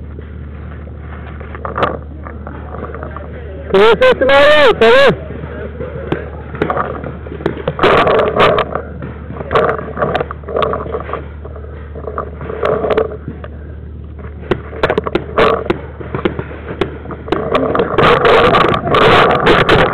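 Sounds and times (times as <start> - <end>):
rubbing and knocking on camera: 14.2 - 19.9.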